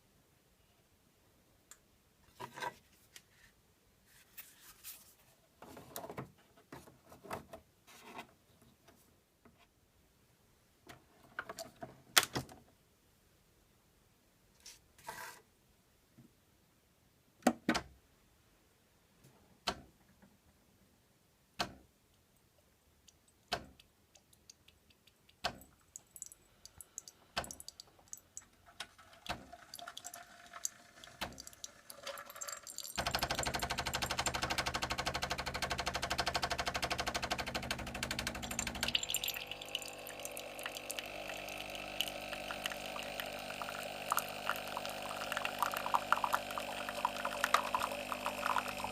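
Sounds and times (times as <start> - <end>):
liquid running into a cup: 28.9 - 35.0, 36.9 - 48.9
coffee machine pump buzzing: 29.3 - 48.9
coffee machine ticking: 29.3 - 48.9.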